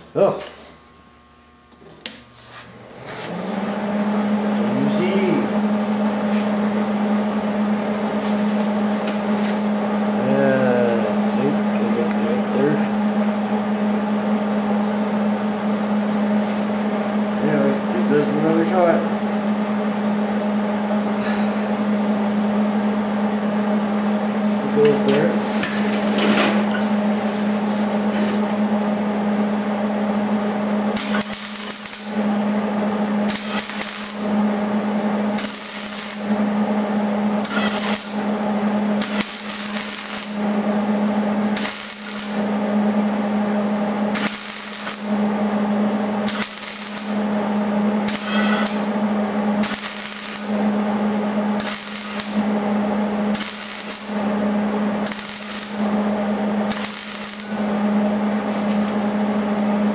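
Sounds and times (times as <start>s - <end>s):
steady low hum: 0.0s - 59.9s
welder arc crackling: 30.8s - 43.0s, 43.8s - 58.3s.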